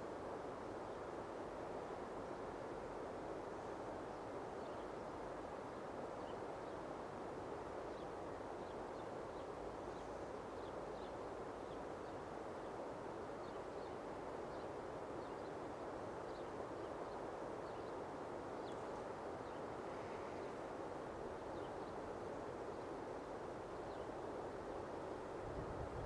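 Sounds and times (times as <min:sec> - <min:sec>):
soft rushing hiss: 0:00.0 - 0:26.0
faint bird chirps: 0:13.4 - 0:20.8.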